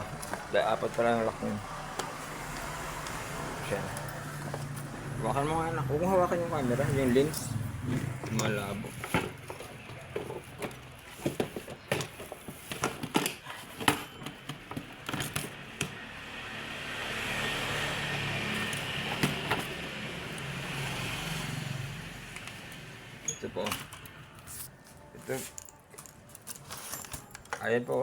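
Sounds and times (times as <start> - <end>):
motor vehicle passing: 0.0 - 10.0, 15.5 - 23.2
objects clicking and knocking: 7.3 - 16.0, 22.3 - 24.5, 25.5 - 28.0.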